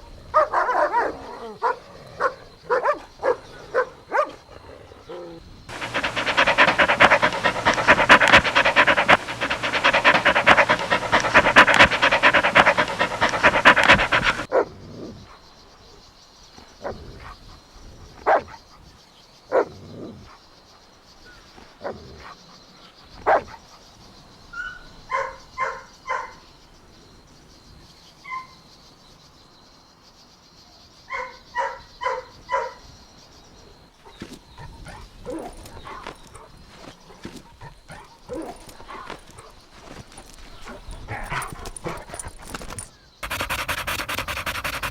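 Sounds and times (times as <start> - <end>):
puppy barks: 0.4 - 4.4, 5.7 - 14.6, 31.1 - 32.8, 40.7 - 44.9
puppies making rough noise: 5.7 - 14.5, 37.6 - 44.9.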